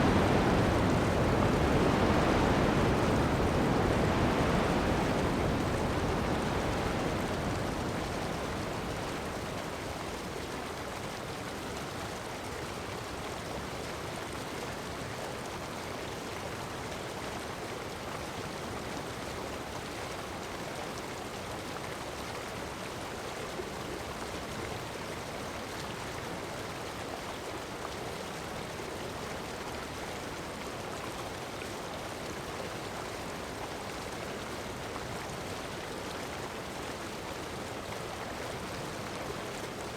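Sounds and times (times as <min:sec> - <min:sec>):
heavy rain hissing: 0:00.0 - 0:09.6
surf washing on sand: 0:00.0 - 0:10.4.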